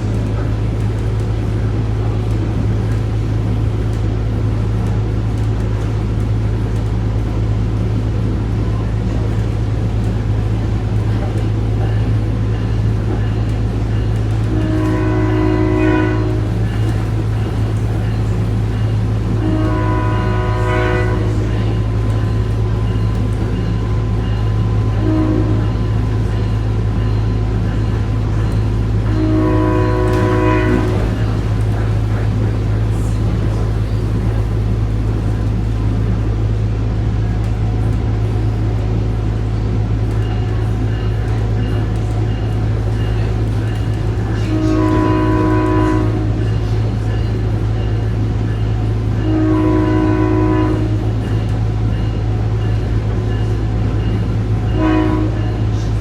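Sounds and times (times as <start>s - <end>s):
railcar engine hum: 0.0s - 56.0s
train running rumble: 0.0s - 56.0s
train horn blasts: 14.4s - 32.3s, 43.7s - 46.7s, 48.6s - 51.5s, 53.3s - 55.9s.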